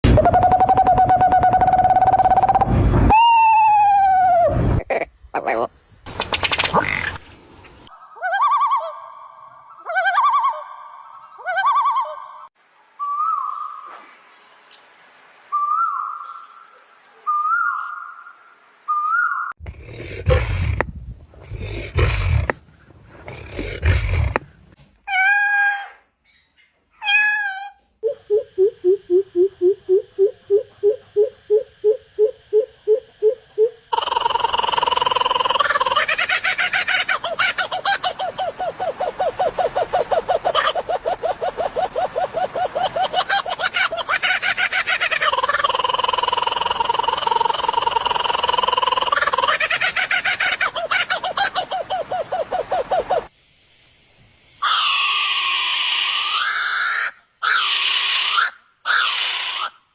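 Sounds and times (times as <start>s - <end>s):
bird calling: 15.5s - 24.5s, 37.3s - 44.4s, 45.1s - 53.3s
rough breathy bird calls: 18.9s - 24.7s.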